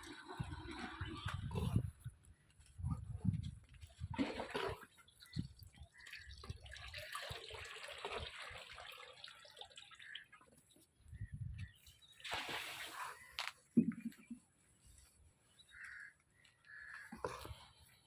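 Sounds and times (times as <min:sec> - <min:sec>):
liquid trickling and splashing: 0:00.0 - 0:01.9, 0:03.8 - 0:11.0, 0:11.6 - 0:13.4.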